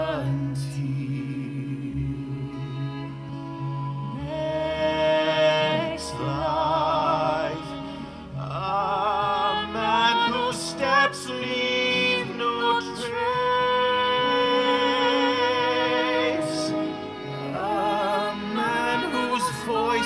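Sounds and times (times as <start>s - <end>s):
soft accompaniment: 0.0s - 20.0s
woman singing opera: 0.0s - 20.0s.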